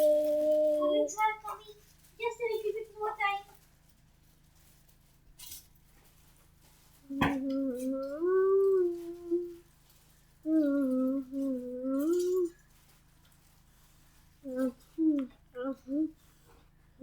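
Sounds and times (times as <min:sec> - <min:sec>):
child humming: 0:00.0 - 0:01.3, 0:07.1 - 0:09.7, 0:10.4 - 0:12.6, 0:14.4 - 0:16.2.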